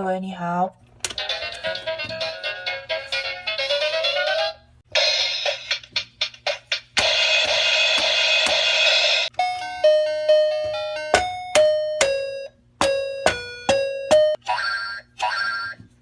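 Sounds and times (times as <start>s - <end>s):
chiming tune over a beat: 9.3s - 14.4s
toy drum taps: 10.7s - 12.2s, 12.8s - 14.4s.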